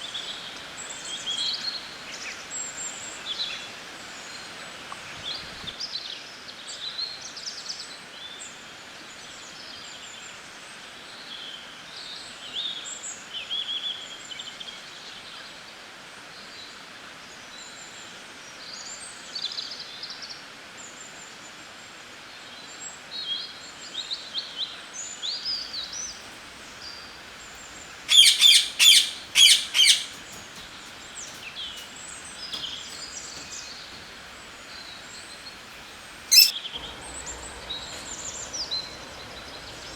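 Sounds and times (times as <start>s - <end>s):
background hiss: 25.5s - 39.9s
songbirds chirping and singing: 25.6s - 39.9s
bird harsh rapid notes: 25.8s - 36.5s.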